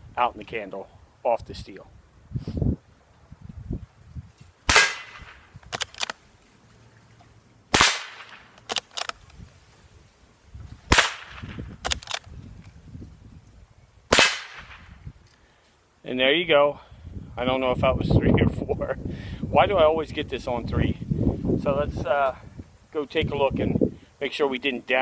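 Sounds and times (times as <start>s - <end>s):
rifle shots: 4.7s - 6.2s, 7.7s - 9.2s, 10.9s - 12.3s, 14.1s - 14.9s
quick small clicks: 5.2s - 6.2s, 8.3s - 9.4s, 11.8s - 12.3s.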